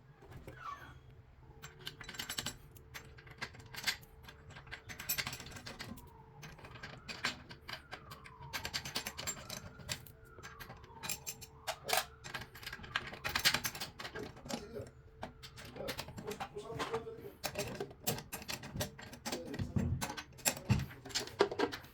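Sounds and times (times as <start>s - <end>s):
faint rising and falling squeak: 0.2s - 1.2s.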